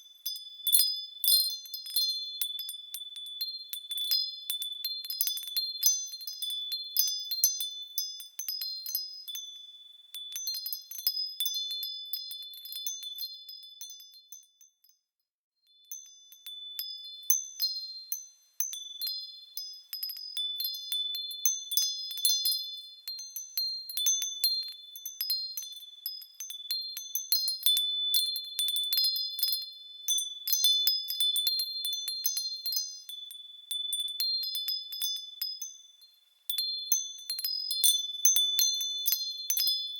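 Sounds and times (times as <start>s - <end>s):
wind chimes ringing: 10.2s - 14.9s, 15.8s - 39.9s.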